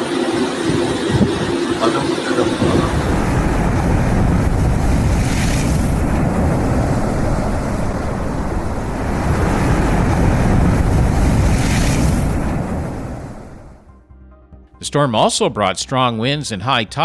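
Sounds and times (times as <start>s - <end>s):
heavy surf waves breaking: 0.0s - 13.8s
wind buffeting microphone: 0.6s - 13.8s.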